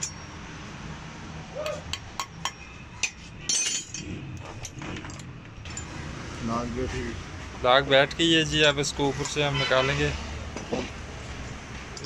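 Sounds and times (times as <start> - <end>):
steel parts clinking rattle: 2.5 - 6.0.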